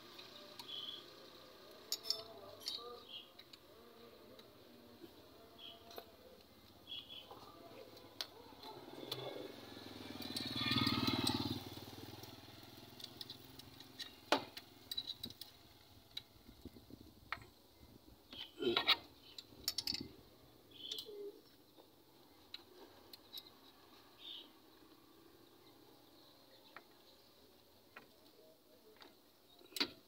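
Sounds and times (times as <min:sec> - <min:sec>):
hand tools clicking and clinking: 0:01.7 - 0:03.6, 0:12.9 - 0:16.2, 0:18.6 - 0:20.1.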